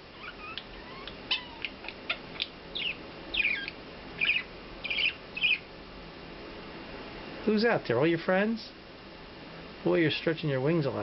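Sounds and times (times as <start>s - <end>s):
budgerigar chirping: 0.2s - 5.7s.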